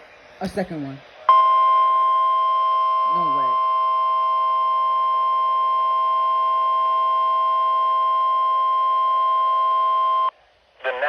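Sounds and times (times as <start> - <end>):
steady electronic alert tone: 1.3 - 5.5.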